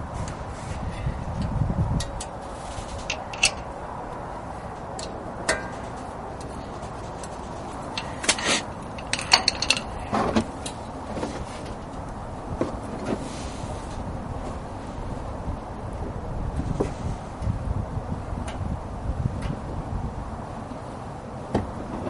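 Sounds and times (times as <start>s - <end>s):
metal tools clicking and clinking: 3.0s - 3.7s, 5.0s - 10.8s.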